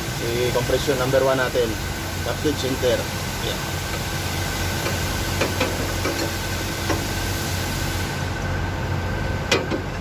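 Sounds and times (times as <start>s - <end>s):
steady mechanical hum: 0.0s - 10.0s.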